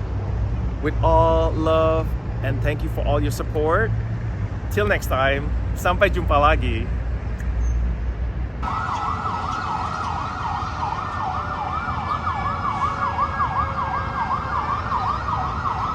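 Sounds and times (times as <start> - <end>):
siren yelping: 8.6 - 15.9.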